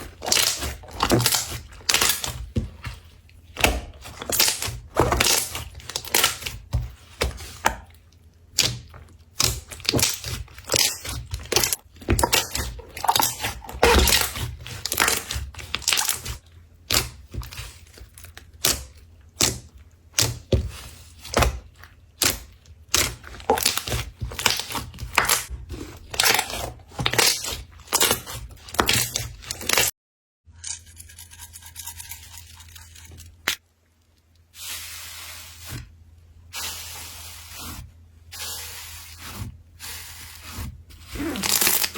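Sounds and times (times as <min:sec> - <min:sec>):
soft hissing slime: 0:34.5 - 0:35.9, 0:36.5 - 0:41.4.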